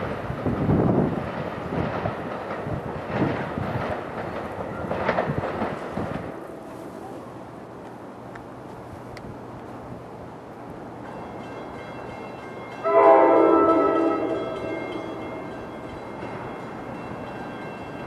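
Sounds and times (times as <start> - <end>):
wind buffeting microphone: 0.0 - 7.8
passing train rail noise: 0.0 - 18.0.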